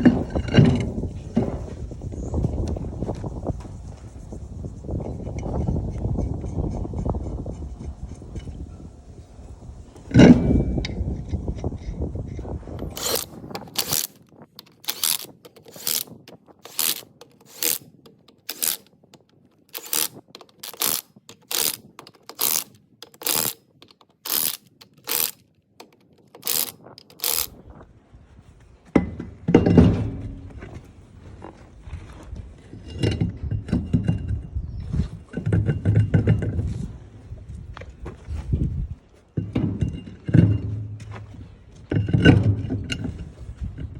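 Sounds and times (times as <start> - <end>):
mechanical rasping strokes: 12.8 - 27.6.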